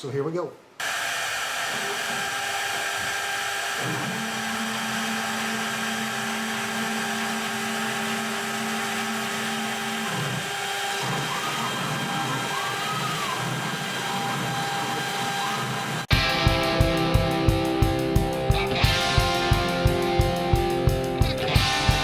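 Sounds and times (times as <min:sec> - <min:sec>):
low steady motor tone: 0:00.8 - 0:11.3
router spindle whine: 0:00.8 - 0:16.1.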